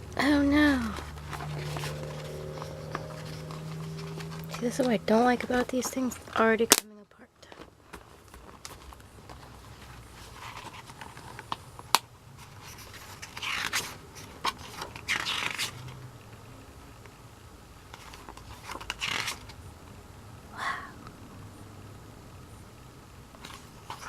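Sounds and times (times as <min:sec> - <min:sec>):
paper packaging rustling: 0:00.6 - 0:06.8, 0:07.4 - 0:16.0, 0:17.9 - 0:19.6.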